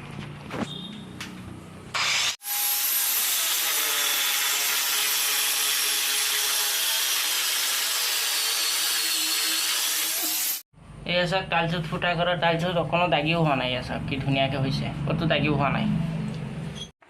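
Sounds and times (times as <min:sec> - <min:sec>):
electric drill grinding into tile: 0:02.0 - 0:10.6.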